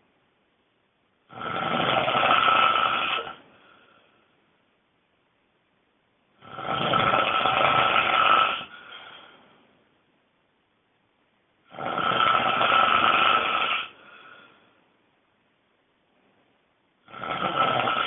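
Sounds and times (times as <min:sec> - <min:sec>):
person snoring loudly: 0:01.3 - 0:03.6, 0:06.4 - 0:09.2, 0:11.7 - 0:14.1, 0:17.0 - 0:18.0.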